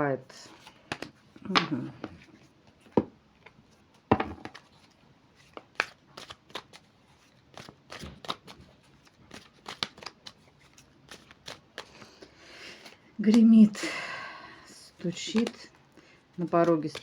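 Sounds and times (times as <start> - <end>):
cards being shuffled: 0.5 - 13.7, 14.9 - 17.0.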